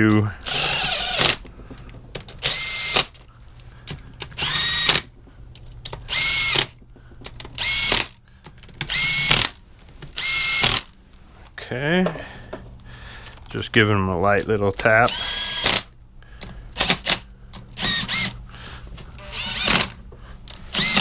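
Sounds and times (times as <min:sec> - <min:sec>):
power driver motor whine: 0:00.4 - 0:01.4, 0:02.4 - 0:03.2, 0:04.4 - 0:05.1, 0:17.8 - 0:18.4, 0:19.2 - 0:20.0, 0:20.6 - 0:21.0.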